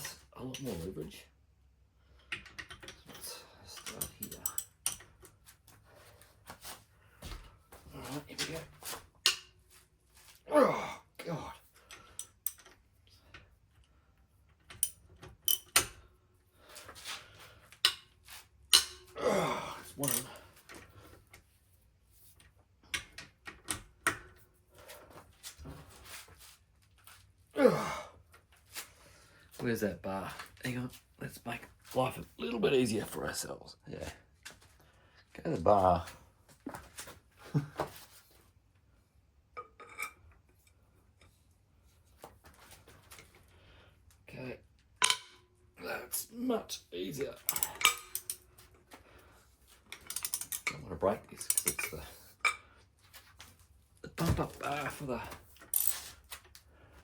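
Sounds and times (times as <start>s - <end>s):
scraping rattle of tools: 2.3s - 5.2s, 47.4s - 48.5s, 49.9s - 52.2s
steel hand tools clinking: 3.8s - 5.1s, 14.7s - 15.9s, 18.7s - 19.2s, 20.0s - 20.4s, 45.0s - 45.5s, 47.4s - 48.5s, 50.0s - 50.8s, 51.4s - 52.6s, 55.7s - 56.1s.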